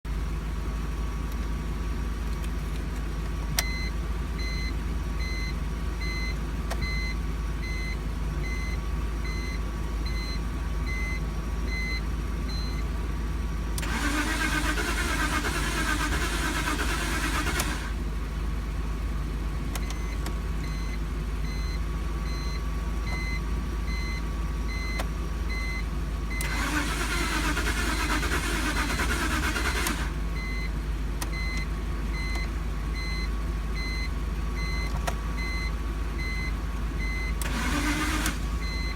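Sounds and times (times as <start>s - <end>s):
car starter cranking: 13.8s - 18.0s, 26.3s - 30.3s, 37.3s - 38.8s.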